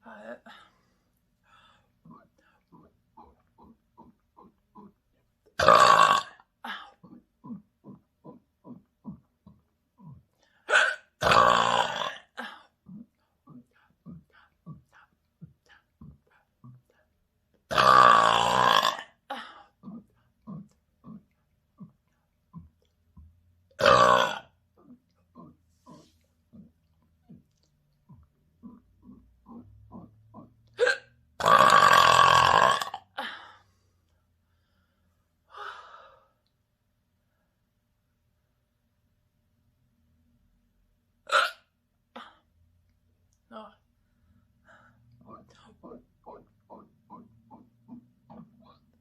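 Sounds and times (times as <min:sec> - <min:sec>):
person gulping air: 0:01.9 - 0:17.0, 0:19.7 - 0:33.2
person burping loudly: 0:02.1 - 0:13.6, 0:17.7 - 0:21.2, 0:23.7 - 0:27.4, 0:28.1 - 0:33.3, 0:41.3 - 0:42.3
loud long burp: 0:05.6 - 0:06.5, 0:10.7 - 0:12.4, 0:17.7 - 0:19.2, 0:23.8 - 0:24.6, 0:30.8 - 0:33.2, 0:41.3 - 0:41.7.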